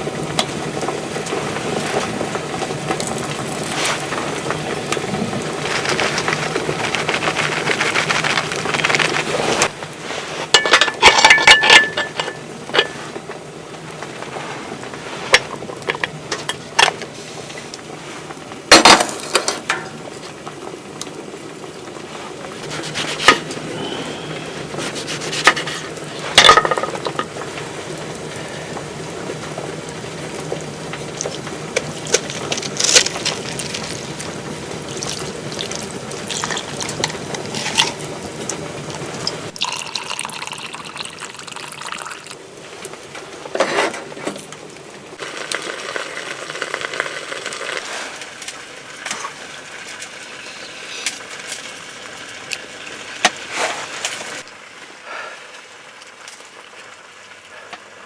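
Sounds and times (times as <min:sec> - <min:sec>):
food hissing in a pot: 0:03.3 - 0:10.6, 0:12.9 - 0:15.7, 0:17.0 - 0:18.6, 0:21.9 - 0:39.5, 0:45.2 - 0:55.8
pot and utensils clinking: 0:10.4 - 0:13.2, 0:22.6 - 0:24.0, 0:24.7 - 0:27.6, 0:35.0 - 0:38.1.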